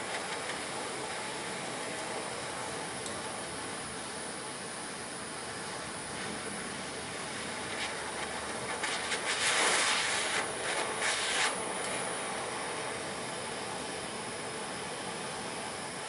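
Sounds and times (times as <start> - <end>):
torch flame hissing: 0.0 - 3.0, 4.0 - 13.8.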